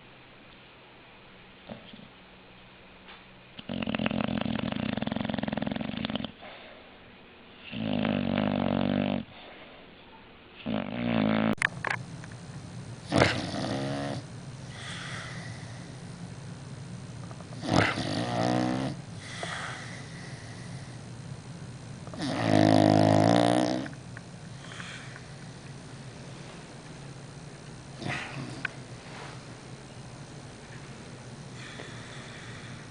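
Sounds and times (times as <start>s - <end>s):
dog snoring: 3.6s - 6.5s, 7.6s - 9.4s, 10.6s - 11.6s, 13.0s - 16.2s, 17.3s - 21.1s, 22.0s - 25.8s, 28.0s - 29.6s, 31.5s - 32.9s.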